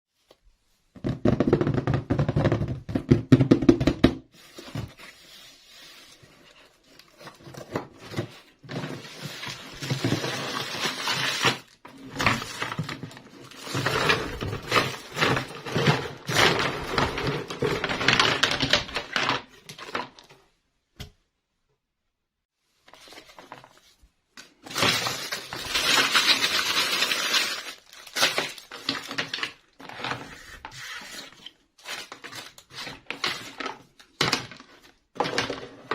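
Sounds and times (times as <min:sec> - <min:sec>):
packaging crinkling: 0:22.9 - 0:30.4
plastic toy pieces clattering: 0:24.7 - 0:30.3.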